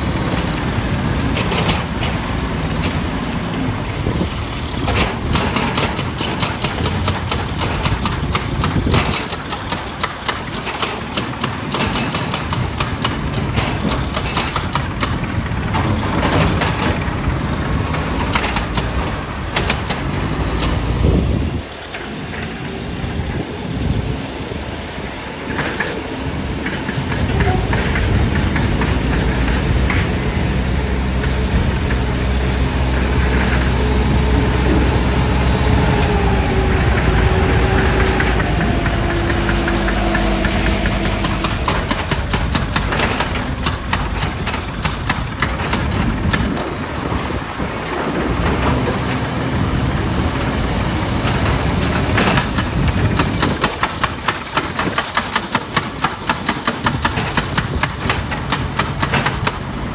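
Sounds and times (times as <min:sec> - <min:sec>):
stone-crushing machinery engine: 0:25.5 - 0:59.9.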